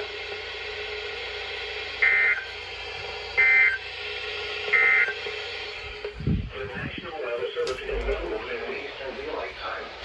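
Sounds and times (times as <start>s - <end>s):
radio hiss: 4.7s - 10.0s.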